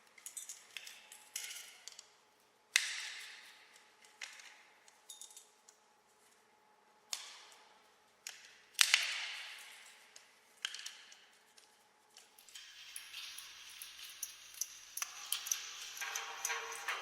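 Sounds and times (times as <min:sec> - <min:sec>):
metal clanks with reverb: 0:12.5 - 0:17.0.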